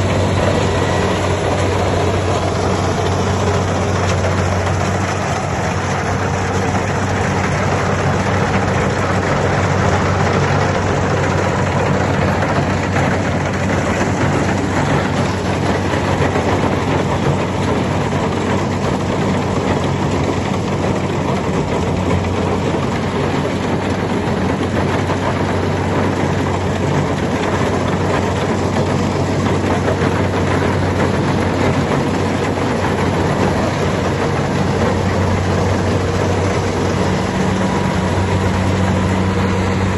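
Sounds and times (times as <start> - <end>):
combine harvester engine running: 0.0 - 39.9.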